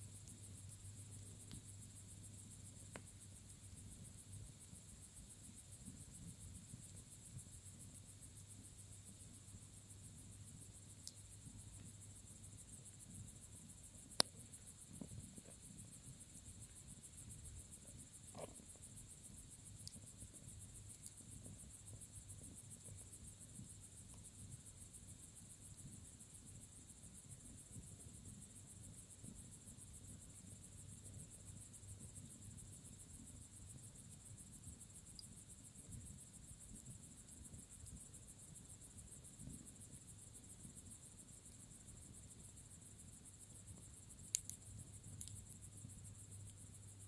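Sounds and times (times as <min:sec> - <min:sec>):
crickets chirping: 0:00.0 - 0:47.0
bonfire crackling: 0:12.8 - 0:24.6, 0:43.7 - 0:45.6
fire popping: 0:44.3 - 0:45.4.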